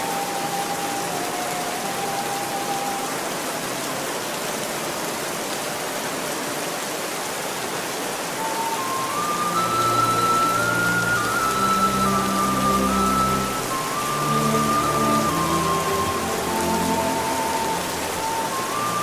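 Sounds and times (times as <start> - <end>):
soft melody: 0.0 - 4.4, 8.3 - 19.0
artificial rainfall hissing: 0.0 - 19.0.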